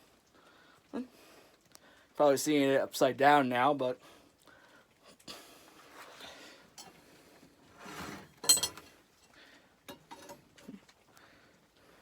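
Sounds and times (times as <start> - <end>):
metal objects clicking and rustling: 8.1 - 8.9
ringing metallic clink: 8.4 - 8.8.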